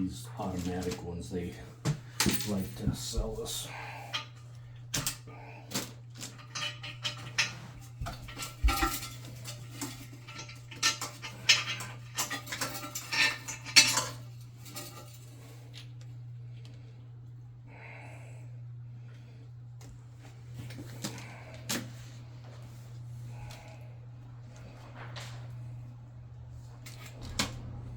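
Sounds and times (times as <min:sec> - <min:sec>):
steady low hum: 0:00.0 - 0:27.9
tools and hard parts clattering: 0:00.4 - 0:15.6.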